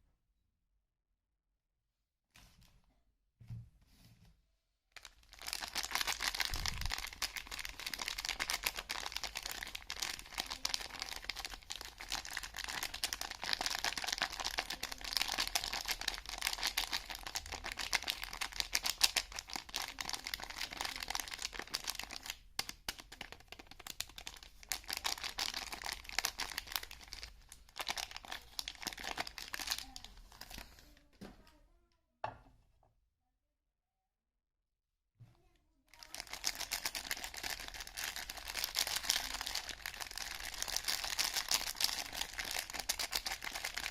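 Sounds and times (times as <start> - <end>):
wrapping crinkling and tearing: 5.0 - 31.0, 36.0 - 43.9.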